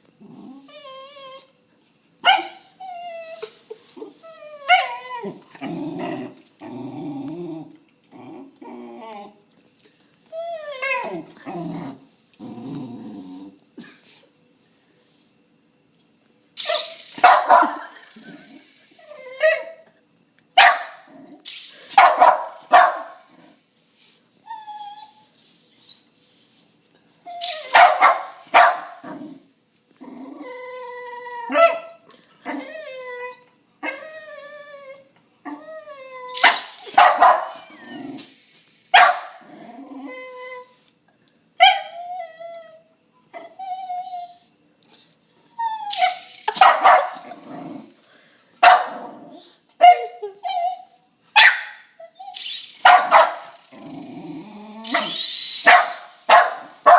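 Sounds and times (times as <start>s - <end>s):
dog whining and yipping: 0.5s - 1.6s, 2.3s - 5.8s, 24.4s - 28.2s, 41.6s - 44.6s, 45.3s - 46.3s, 49.8s - 51.0s, 51.9s - 53.8s, 54.6s - 56.1s
dog barking: 17.2s - 17.8s, 20.6s - 21.0s, 22.0s - 23.2s, 27.7s - 29.0s, 37.0s - 37.6s, 39.0s - 39.4s, 46.6s - 47.2s, 48.6s - 49.0s, 51.4s - 51.8s, 52.8s - 53.5s, 55.7s - 56.9s.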